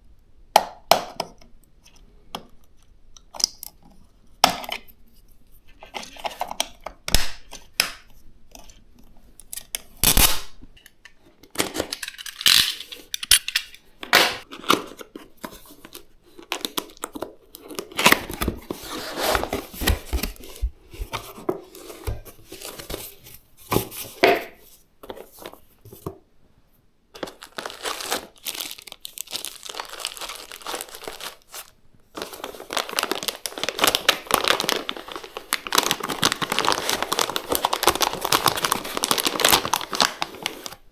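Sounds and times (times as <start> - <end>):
packaging crinkling and tearing: 9.5 - 10.6, 11.4 - 20.7, 27.2 - 40.9.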